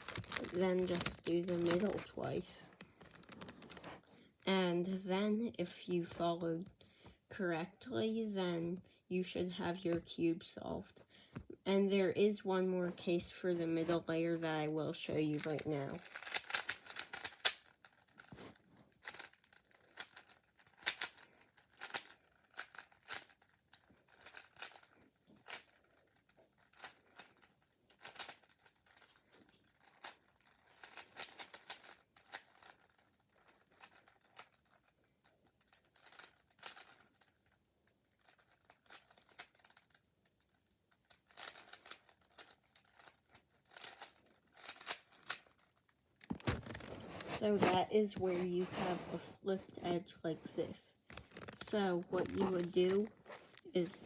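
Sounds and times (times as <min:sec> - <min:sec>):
puzzle cube clicking as turned: 0:00.0 - 0:02.1, 0:15.3 - 0:18.3, 0:19.0 - 0:34.9, 0:35.6 - 0:37.5, 0:38.2 - 0:47.9, 0:51.0 - 0:54.0.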